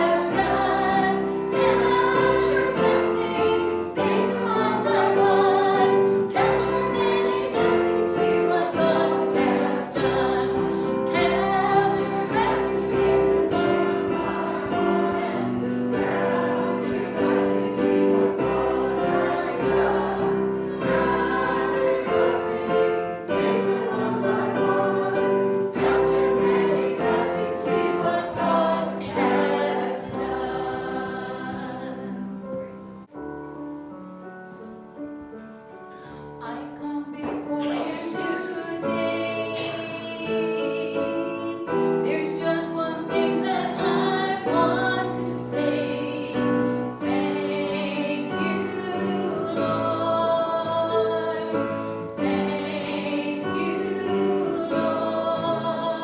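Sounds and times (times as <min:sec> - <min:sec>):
choir singing a hymn: 0:00.0 - 0:33.1, 0:36.4 - 0:56.0
musical accompaniment: 0:00.0 - 0:56.0.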